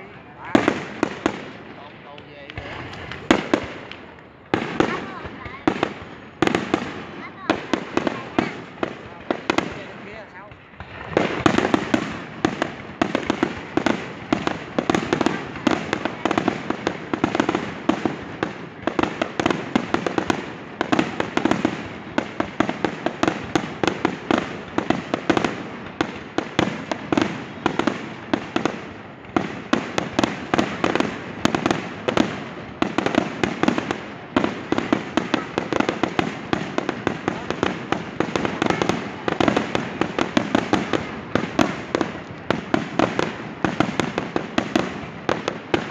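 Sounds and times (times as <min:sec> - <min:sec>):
fireworks bangs and crackles: 0:00.0 - 0:45.9.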